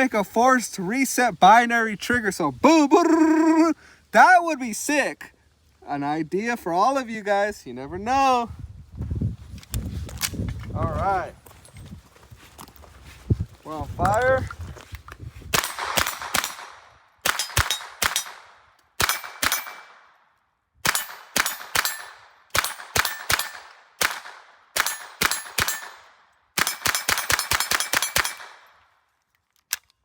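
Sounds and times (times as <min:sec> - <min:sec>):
rapid gunshots: 0:15.6 - 0:19.9.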